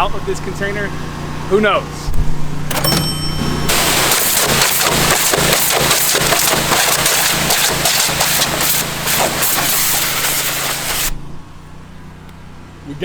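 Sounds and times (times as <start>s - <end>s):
pressure washer spray hissing: 3.7s - 11.2s
water spatter crackling: 3.7s - 11.2s.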